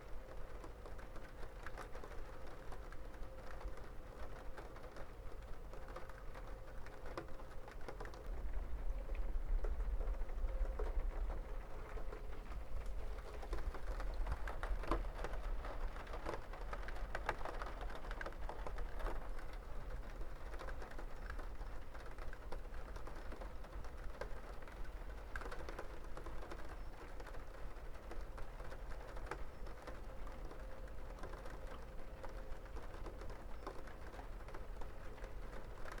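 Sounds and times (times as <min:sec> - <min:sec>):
raindrops pattering: 0:00.0 - 0:36.0.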